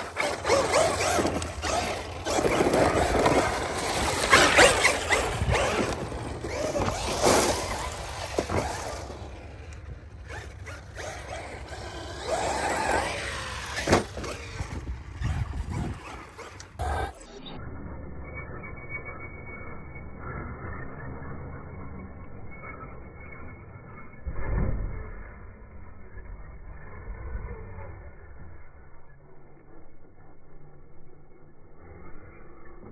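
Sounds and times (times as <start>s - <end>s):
tyres rolling over ground: 0.0s - 17.2s
electric motor whining: 0.0s - 17.3s.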